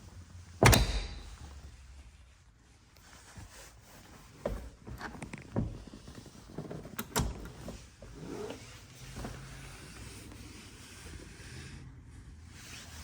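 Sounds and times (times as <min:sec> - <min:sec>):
seat clunks and knocks: 0:00.6 - 0:01.8, 0:04.3 - 0:09.8.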